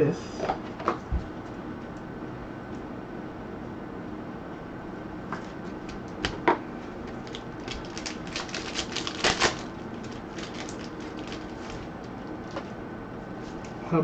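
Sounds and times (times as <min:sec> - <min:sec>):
trading cards clicking and snapping: 0:07.1 - 0:09.7.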